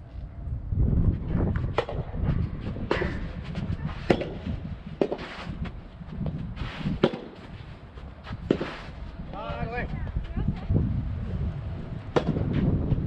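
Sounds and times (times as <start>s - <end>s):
wind rumbling on microphone: 0.0s - 13.0s
tennis racket hitting ball: 2.8s - 5.5s, 7.0s - 7.4s, 8.4s - 8.9s.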